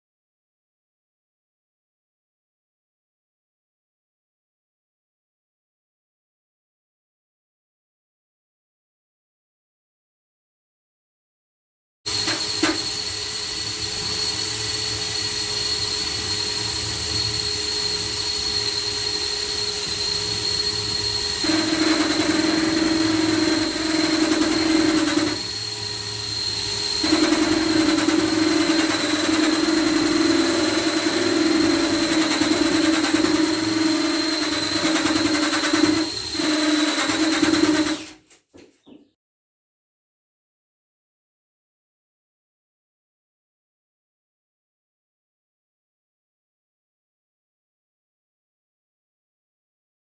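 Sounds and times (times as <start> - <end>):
electric polisher whine: 12.1 - 38.2.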